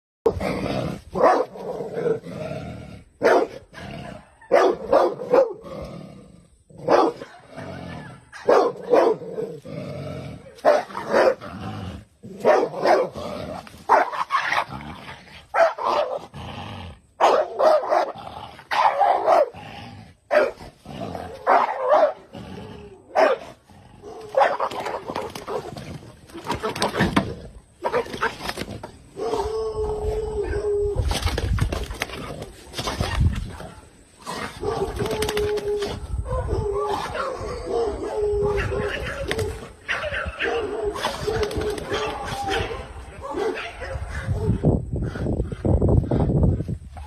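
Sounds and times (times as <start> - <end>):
dog barking: 1.2 - 1.5, 3.2 - 5.6, 6.9 - 9.2, 10.6 - 11.4, 12.4 - 13.2, 13.9 - 14.2, 15.5 - 16.2, 17.2 - 19.6, 20.3 - 20.6, 21.4 - 22.3, 23.1 - 25.6, 27.8 - 28.2, 34.6 - 35.0, 39.9 - 44.6.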